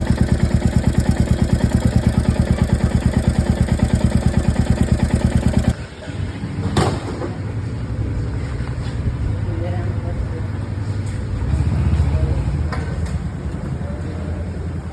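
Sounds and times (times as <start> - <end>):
motorcycle engine idling: 0.0 - 5.8.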